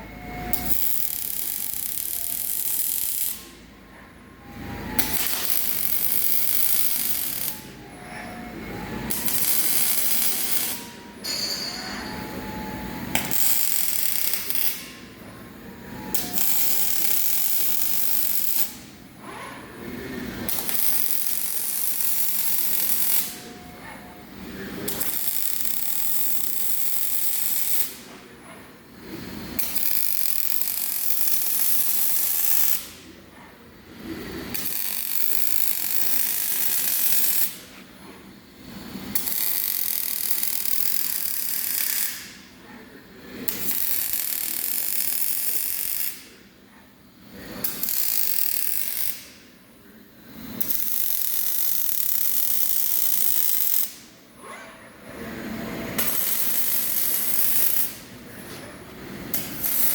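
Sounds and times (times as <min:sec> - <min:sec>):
crackling welding arc: 0:00.5 - 0:03.7, 0:04.8 - 0:07.8, 0:09.0 - 0:10.9, 0:13.1 - 0:15.1, 0:16.1 - 0:19.0, 0:20.2 - 0:23.7, 0:24.4 - 0:28.2, 0:28.9 - 0:33.1, 0:33.9 - 0:37.8, 0:38.6 - 0:42.6, 0:43.4 - 0:46.5, 0:47.6 - 0:49.5, 0:50.2 - 0:54.2, 0:55.9 - 0:58.2, 0:59.1 - 0:59.9.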